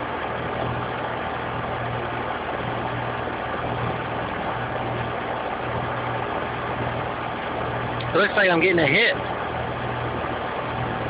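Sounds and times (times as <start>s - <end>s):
air conditioning unit humming: 0.0s - 11.0s.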